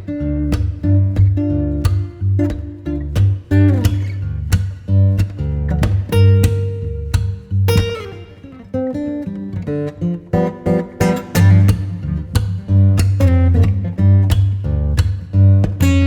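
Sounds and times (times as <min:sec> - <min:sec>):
acoustic guitar plucking: 0:00.0 - 0:16.0
deep bass: 0:11.4 - 0:16.0.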